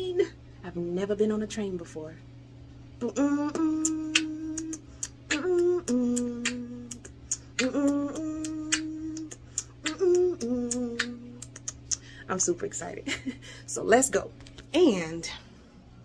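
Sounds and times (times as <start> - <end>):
woman humming: 3.0 - 12.6.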